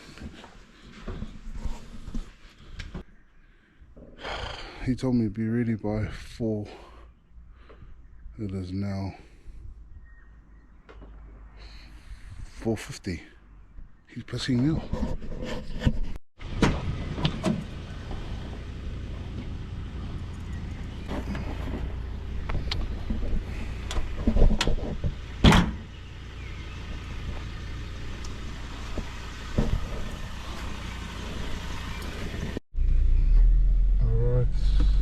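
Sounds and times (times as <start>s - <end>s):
car engine running: 16.4s - 35.0s
sharp knocks and clunks: 21.1s - 25.9s, 28.8s - 30.8s.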